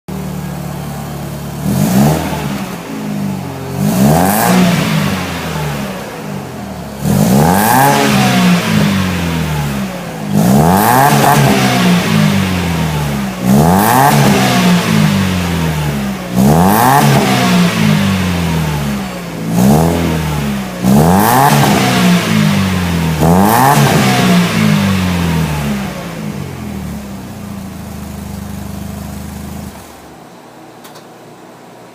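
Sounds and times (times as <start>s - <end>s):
car engine idling and revving: 0.1s - 30.3s.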